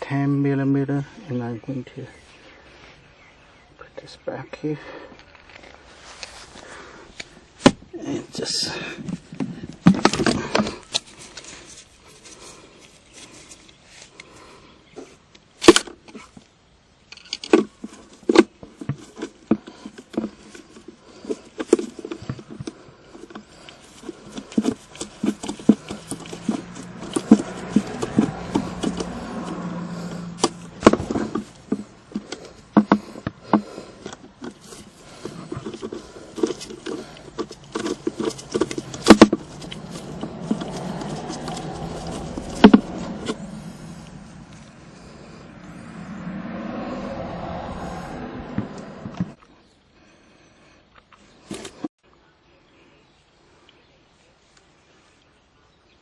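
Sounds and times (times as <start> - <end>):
metal on plastic handling: 9.0 - 16.5, 17.1 - 44.6.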